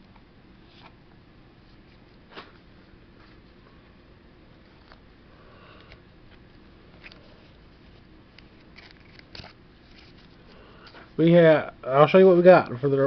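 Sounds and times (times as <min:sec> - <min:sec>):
low room noise: 0:00.0 - 0:13.0
trading cards rustling: 0:05.8 - 0:11.1.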